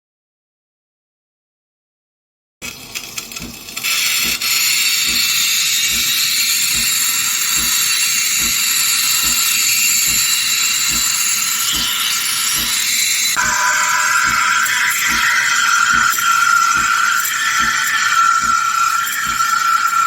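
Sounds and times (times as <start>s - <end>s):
steam wand hissing: 2.8s - 20.0s.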